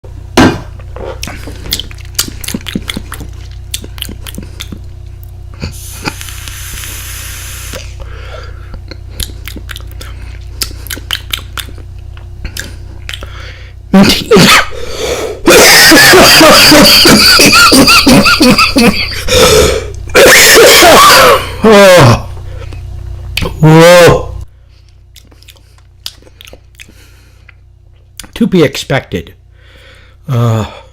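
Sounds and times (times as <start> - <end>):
person coughing harshly: 13.9 - 14.8, 15.5 - 19.5.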